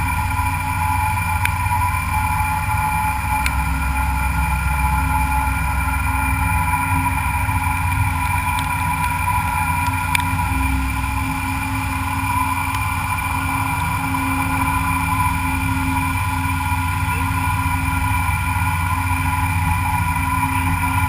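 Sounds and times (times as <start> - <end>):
machine tool humming: 0.0 - 21.0
light ticks: 7.9 - 8.8.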